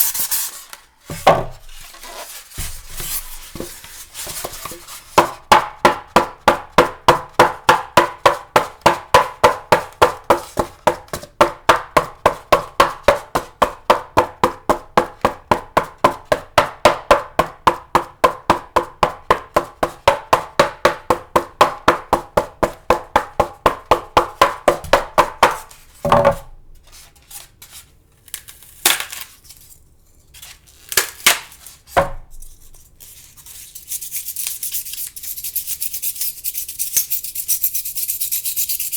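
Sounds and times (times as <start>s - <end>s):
styrofoam rubbed squeaking: 0.0s - 5.4s.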